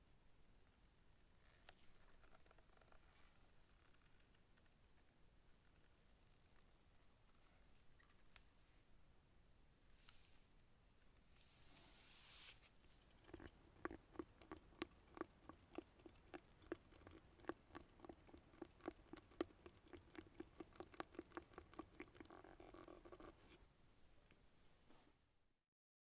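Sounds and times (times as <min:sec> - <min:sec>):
rapid light clicks and taps: 0:13.2 - 0:23.6.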